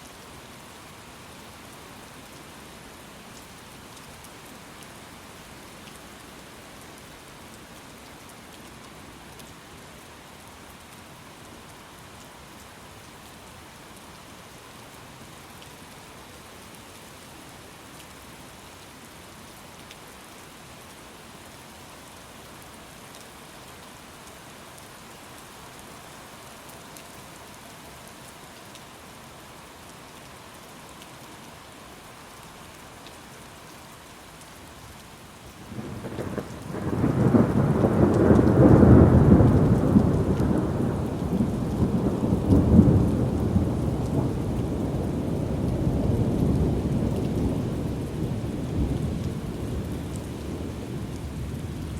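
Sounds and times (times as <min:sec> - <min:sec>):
steady rain hiss: 0:00.0 - 0:51.9
raindrop ticks: 0:32.4 - 0:48.2.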